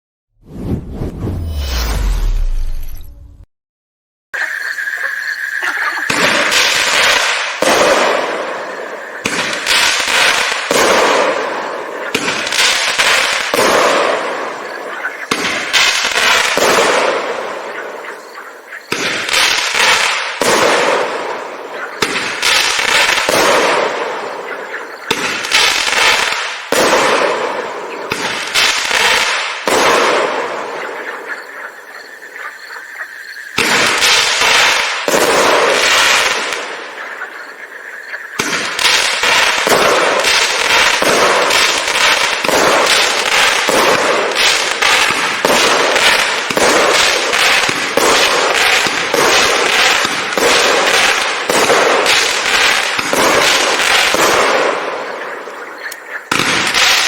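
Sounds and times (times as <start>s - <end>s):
fireworks bangs with crackling: 6.1s - 31.5s, 33.6s - 37.6s, 38.3s - 57.0s.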